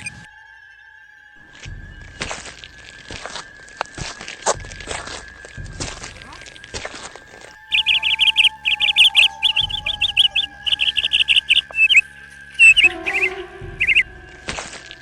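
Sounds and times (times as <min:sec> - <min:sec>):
bird chirping: 0:04.5 - 0:15.0
steady thin high tone: 0:07.5 - 0:15.0.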